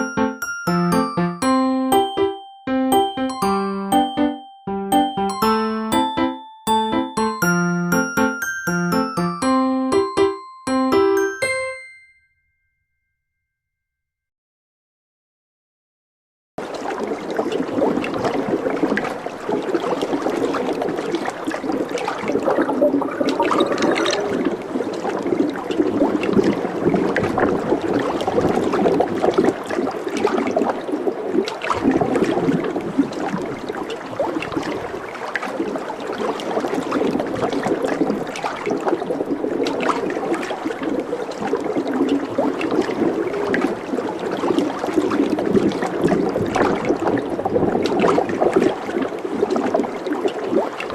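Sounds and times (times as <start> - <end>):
water gurgling and babbling: 16.6 - 50.9.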